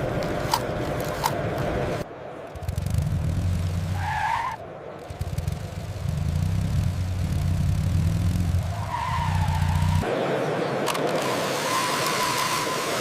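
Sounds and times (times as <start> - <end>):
rc vehicle motor hum: 5.0 - 10.0.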